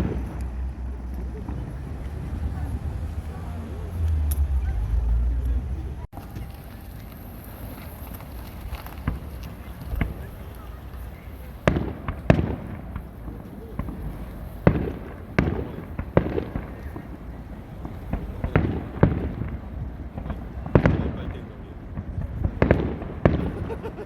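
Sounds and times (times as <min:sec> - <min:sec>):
fireworks bursting: 0:00.0 - 0:24.0.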